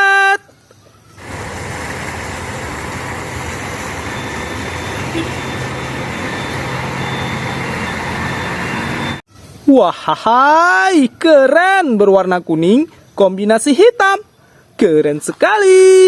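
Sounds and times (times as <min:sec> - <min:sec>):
heavy vehicle engine and road noise: 0:00.4 - 0:09.8.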